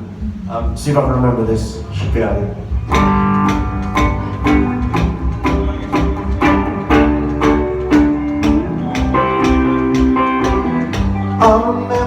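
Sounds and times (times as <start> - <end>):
guitar strumming: 2.6 - 12.0.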